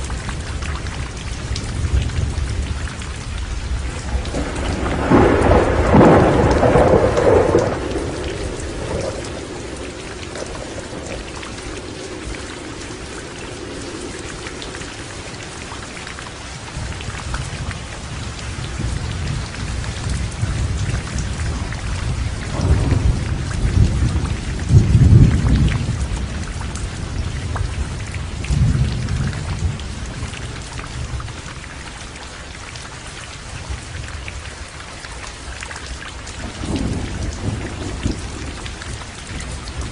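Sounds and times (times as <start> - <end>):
low rolls of thunder: 0.0 - 31.8, 35.5 - 39.9
heavy rain falling: 0.0 - 39.9
loud thunderclap: 3.7 - 15.8, 16.8 - 30.3, 36.4 - 39.9.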